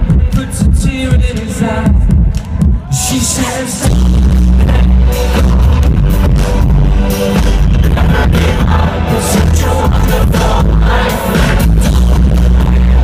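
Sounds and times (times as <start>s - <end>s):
live band music over pa: 0.0s - 13.0s
steady drum beat: 0.0s - 13.0s
booming bass: 3.9s - 13.0s.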